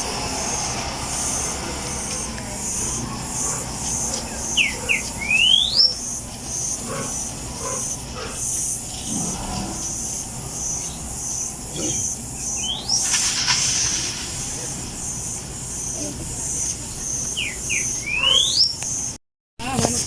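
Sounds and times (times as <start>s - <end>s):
insects chirping: 0.0s - 19.8s
bird whistled call: 4.4s - 6.1s, 11.3s - 14.8s, 16.5s - 19.2s.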